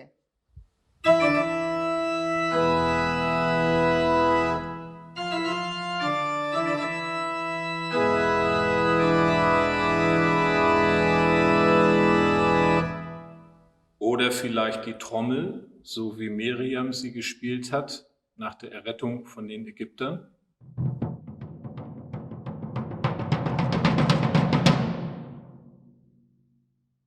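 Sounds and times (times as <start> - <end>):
organ playing sustained chords: 1.0 - 13.6.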